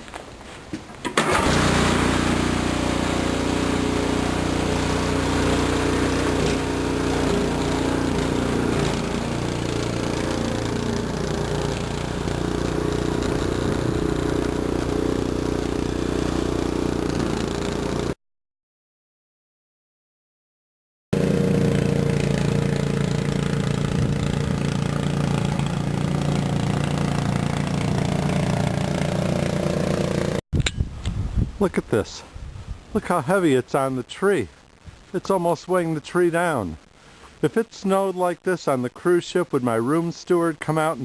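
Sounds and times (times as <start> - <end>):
snowblower engine running: 1.2 - 18.2, 21.2 - 30.4.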